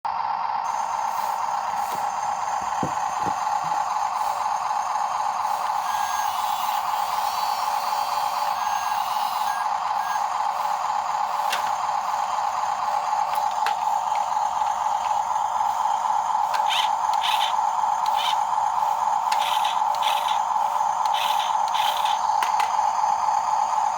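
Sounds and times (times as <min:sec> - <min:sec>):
small electric motor whining: 0:00.7 - 0:23.9.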